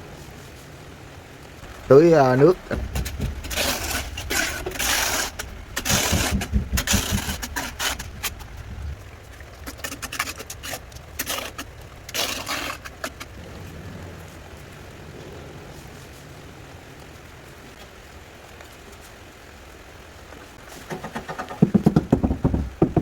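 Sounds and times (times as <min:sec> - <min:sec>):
hand tools rasping on wall: 0:02.5 - 0:08.5, 0:20.8 - 0:23.0.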